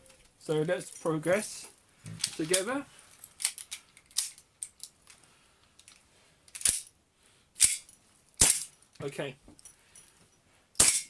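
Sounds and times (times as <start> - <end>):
airsoft pistol shots: 8.4 - 8.7, 10.8 - 11.0.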